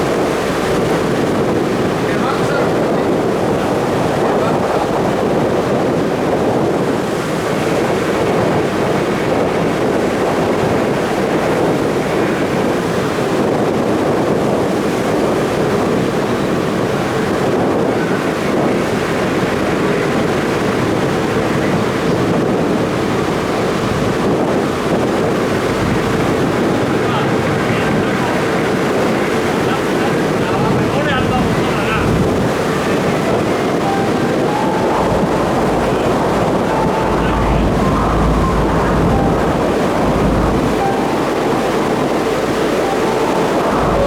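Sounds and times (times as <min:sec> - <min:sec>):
water rushing: 0:00.0 - 0:13.0, 0:25.1 - 0:44.0
ferry engine noise: 0:00.0 - 0:44.0
wind on microphone: 0:00.0 - 0:44.0.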